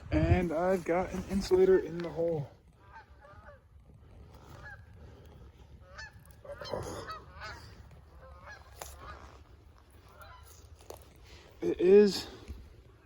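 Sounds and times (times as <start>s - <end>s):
geese honking in distance: 1.4s - 11.1s.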